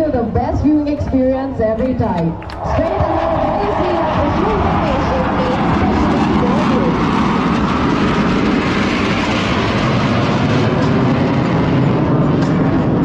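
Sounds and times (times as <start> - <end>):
jet engines roaring overhead: 0.0 - 13.0.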